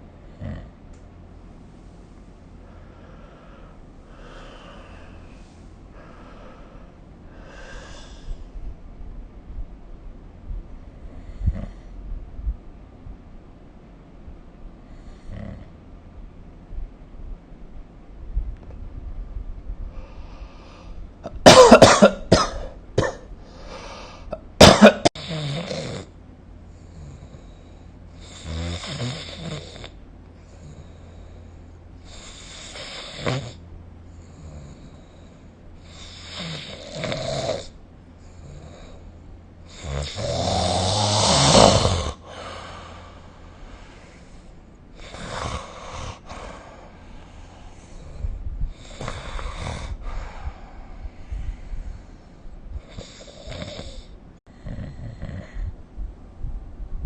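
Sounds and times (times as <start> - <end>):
person snoring: 3.0 - 8.4, 15.0 - 15.7, 25.1 - 26.1, 28.2 - 31.3, 32.1 - 33.6, 34.3 - 39.0, 39.7 - 52.0, 52.8 - 55.7.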